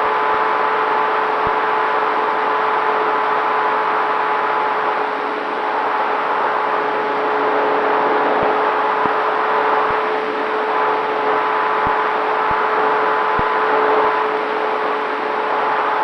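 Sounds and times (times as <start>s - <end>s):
electric motor and propeller whine: 0.0s - 16.0s.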